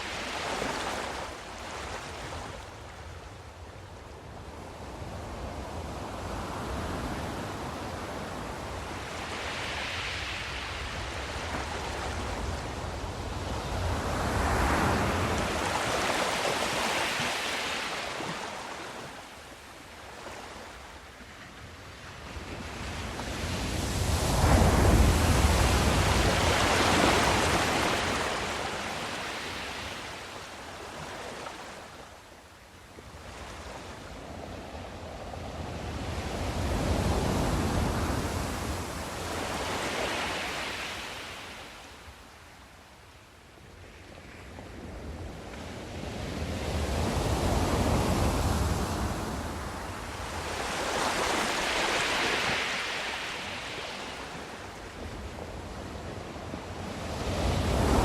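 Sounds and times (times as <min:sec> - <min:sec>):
ocean waves breaking: 0:13.8 - 0:19.3, 0:22.6 - 0:31.9, 0:47.0 - 0:55.0.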